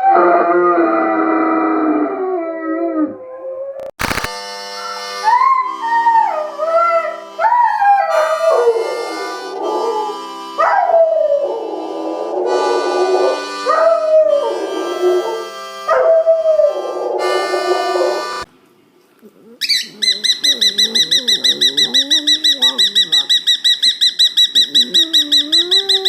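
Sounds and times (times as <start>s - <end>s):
dog howling: 0.0s - 3.8s, 6.2s - 18.4s, 21.0s - 23.2s, 24.7s - 26.0s.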